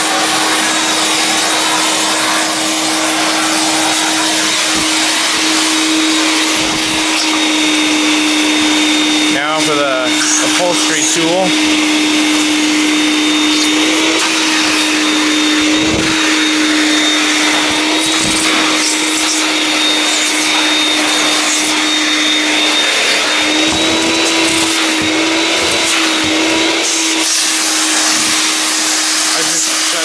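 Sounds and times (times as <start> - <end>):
vacuum cleaner motor running: 0.0 - 30.0
soft bumps of upholstery tool: 11.6 - 29.2.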